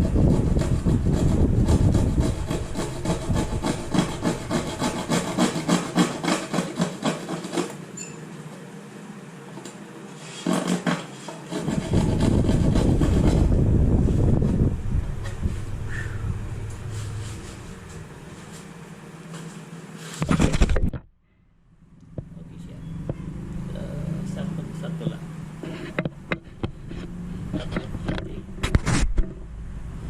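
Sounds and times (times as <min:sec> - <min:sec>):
loud even scraping noise: 0:00.0 - 0:07.8, 0:10.2 - 0:18.7, 0:25.6 - 0:29.5
repeated scraping strokes: 0:00.0 - 0:07.8, 0:10.1 - 0:20.4, 0:23.7 - 0:29.4.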